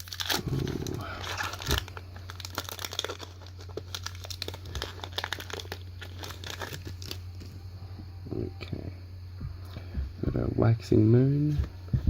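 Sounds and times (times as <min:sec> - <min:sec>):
foil wrapper crinkling: 0:00.0 - 0:07.7
low hum: 0:00.0 - 0:12.0.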